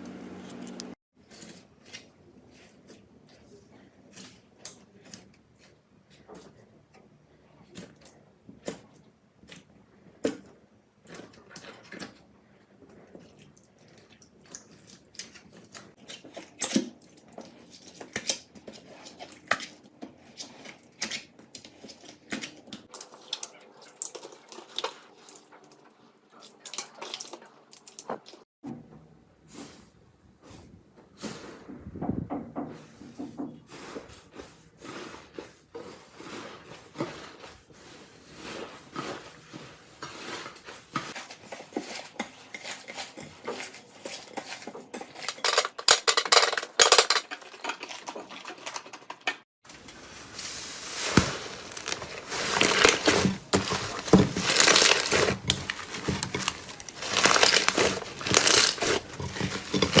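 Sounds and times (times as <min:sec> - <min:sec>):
slime crackling and crunching: 0:50.1 - 1:00.0.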